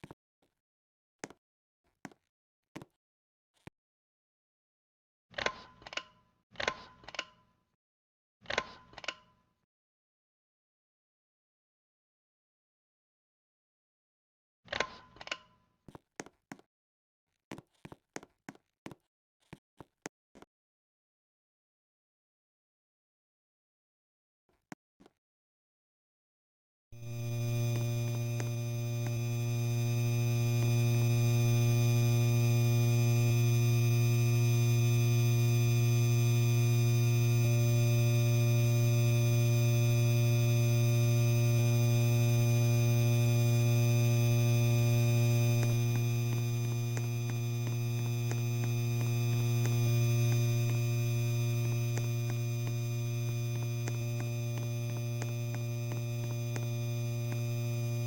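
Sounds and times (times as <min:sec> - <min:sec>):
electric fan motor humming: 0:27.0 - 0:58.0.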